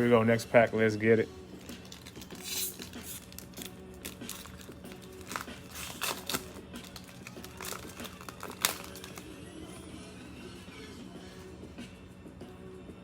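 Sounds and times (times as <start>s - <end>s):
plastic wrapper tearing and crinkling: 1.6s - 9.3s.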